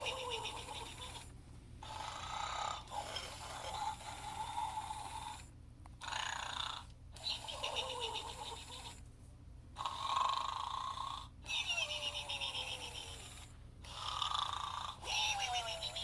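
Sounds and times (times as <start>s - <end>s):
toy pig snoring: 0.0s - 9.0s, 9.8s - 16.0s.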